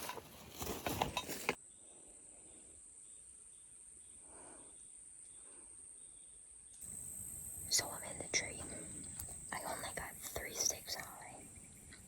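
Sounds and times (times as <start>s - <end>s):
faint pulsing insect chirp: 1.6s - 12.0s
insects trilling drone: 2.5s - 12.0s.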